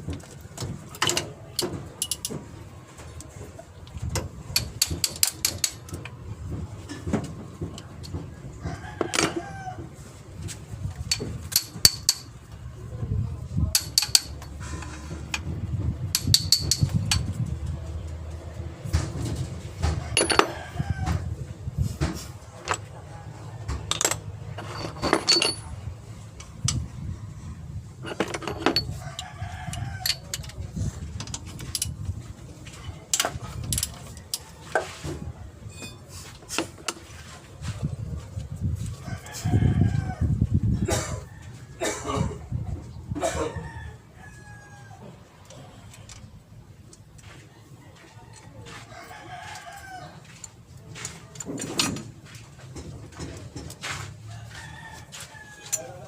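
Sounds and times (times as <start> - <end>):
metal tools clinking: 2.0 - 2.4, 13.7 - 15.4, 16.1 - 17.4, 20.0 - 20.7, 23.8 - 25.9, 28.0 - 30.6, 33.1 - 34.5, 35.7 - 36.1.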